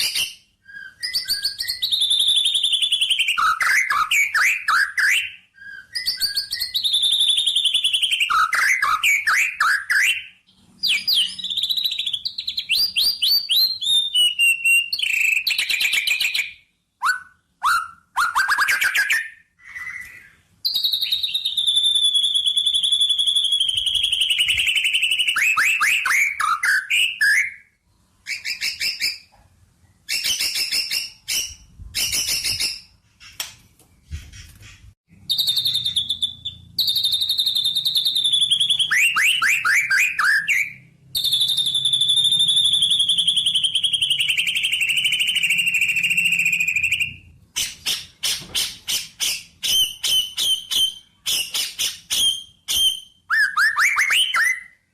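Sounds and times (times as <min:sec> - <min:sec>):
bird chirps: 0:00.0 - 0:54.9
songbird singing trills: 0:35.1 - 0:48.1.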